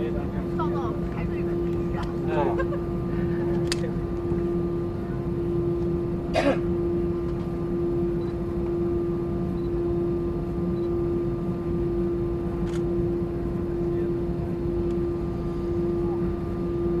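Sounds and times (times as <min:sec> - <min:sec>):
airplane cabin drone: 0:00.0 - 0:17.0
person clearing throat: 0:06.3 - 0:06.7.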